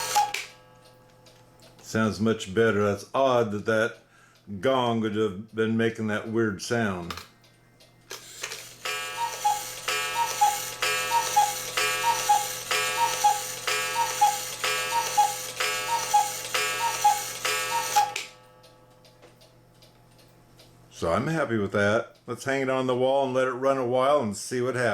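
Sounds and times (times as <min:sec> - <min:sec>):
two-note cuckoo call: 0:09.1 - 0:18.3.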